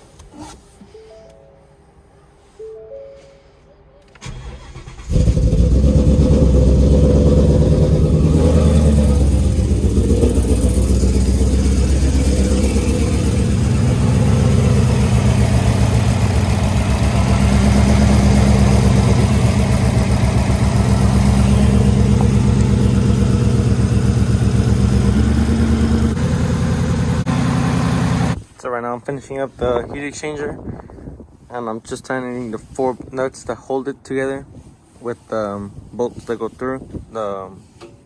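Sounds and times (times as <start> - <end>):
car engine idling: 4.3 - 28.4.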